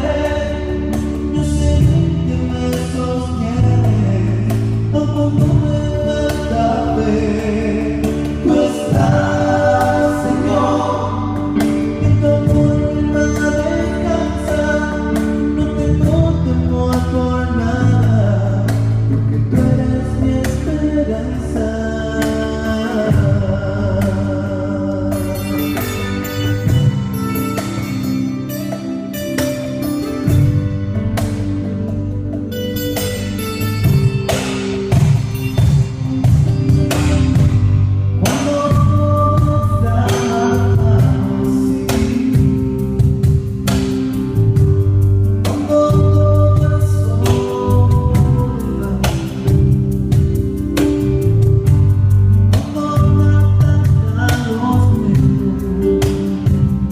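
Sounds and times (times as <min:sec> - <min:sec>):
live band playing: 0:00.0 - 0:56.9
voices singing: 0:06.8 - 0:12.2
drum strikes: 0:33.0 - 0:41.3.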